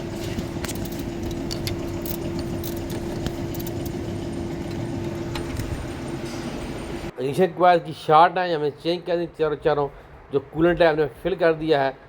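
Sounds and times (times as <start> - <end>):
steady mechanical hum: 0.0 - 7.2.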